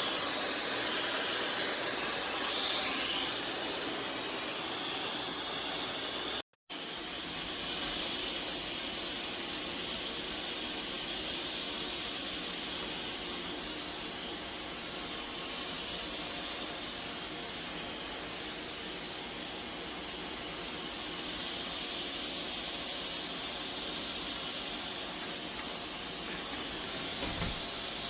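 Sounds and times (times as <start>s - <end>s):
higher hiss: 0.0s - 6.4s.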